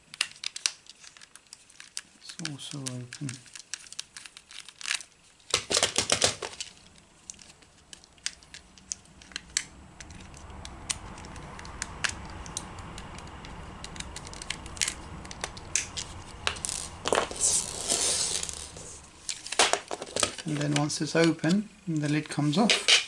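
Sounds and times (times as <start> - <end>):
scraping rustle: 6.3 - 20.9.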